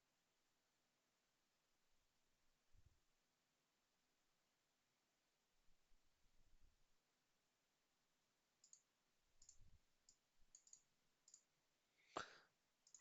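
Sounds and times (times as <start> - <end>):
faint computer mouse clicks: 8.6 - 11.5.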